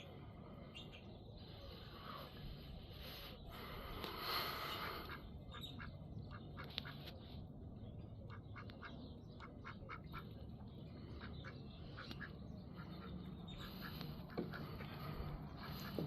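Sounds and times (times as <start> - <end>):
duck quacking: 8.3 - 10.4, 11.0 - 16.0.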